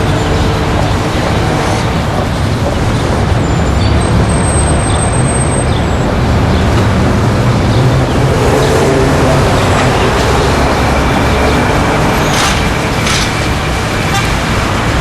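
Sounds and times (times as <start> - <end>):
traffic driving past: 0.0 - 15.0.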